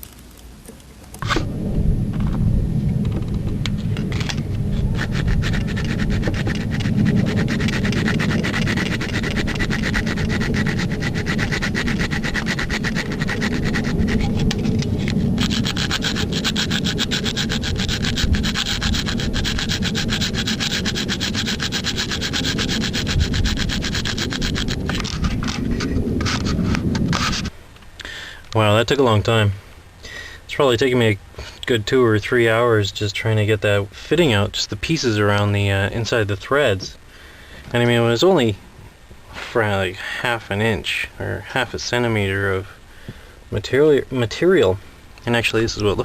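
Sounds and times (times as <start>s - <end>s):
blade scraping metal: 3.7s - 27.5s.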